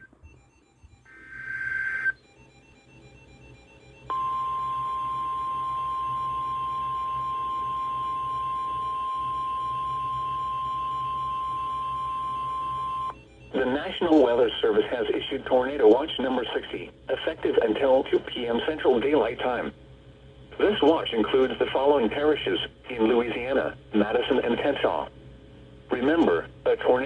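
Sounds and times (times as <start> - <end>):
steady warning alarm tone: 0.0 - 16.6
faint hum: 0.0 - 27.0.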